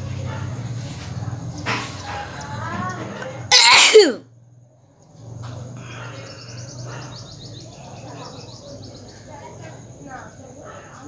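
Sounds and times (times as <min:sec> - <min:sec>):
person sneezing: 0:03.5 - 0:04.2
birds chirping: 0:04.9 - 0:11.0.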